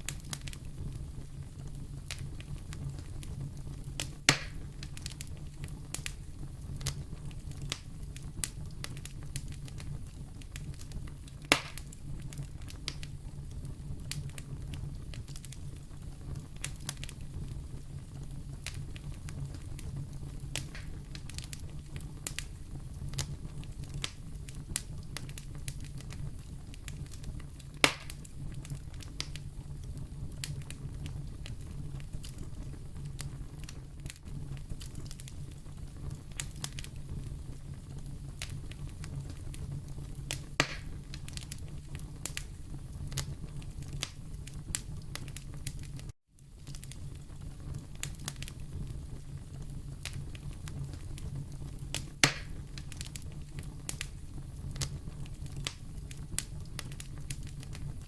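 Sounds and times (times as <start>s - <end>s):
fire crackling: 0.0s - 58.0s
sharp loud fire pops: 4.3s - 4.6s, 11.5s - 11.9s, 20.6s - 21.0s, 27.8s - 28.2s, 40.6s - 41.0s, 52.2s - 52.6s.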